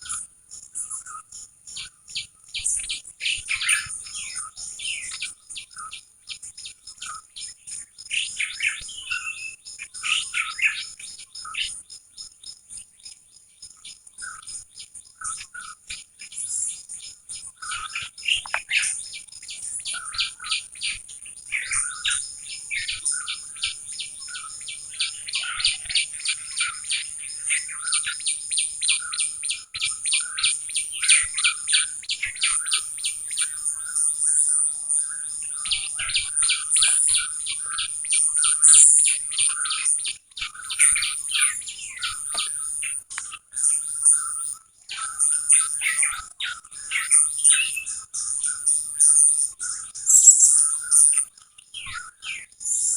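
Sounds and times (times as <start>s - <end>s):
birds chirping and singing: 0.0s - 12.3s, 13.8s - 52.9s
high-pitched ringing tone: 50.1s - 50.7s.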